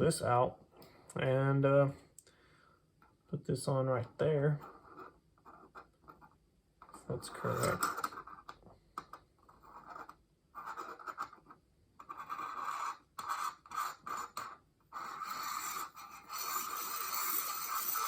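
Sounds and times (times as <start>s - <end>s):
metal parts scraping: 7.3s - 8.2s.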